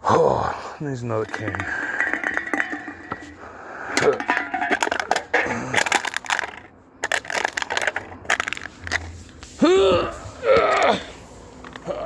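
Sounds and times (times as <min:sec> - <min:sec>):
metal can crumpling: 0:01.2 - 0:09.2.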